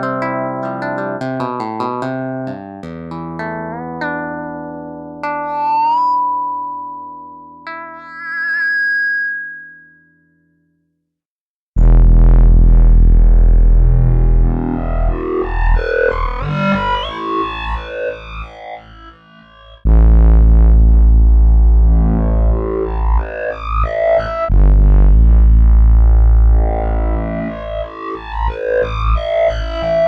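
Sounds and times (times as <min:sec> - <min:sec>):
short melodic synth notes: 0:00.0 - 0:10.2
synthesizer bass note: 0:11.8 - 0:30.0.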